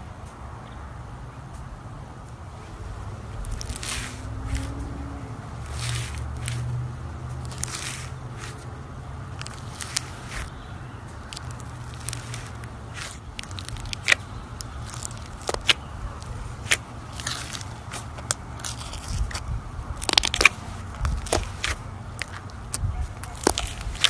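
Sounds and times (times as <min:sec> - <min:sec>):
slime beads crackling and popping: 0:03.4 - 0:04.8, 0:05.6 - 0:06.7, 0:07.4 - 0:08.6, 0:09.4 - 0:10.5, 0:11.2 - 0:19.4, 0:20.0 - 0:24.0.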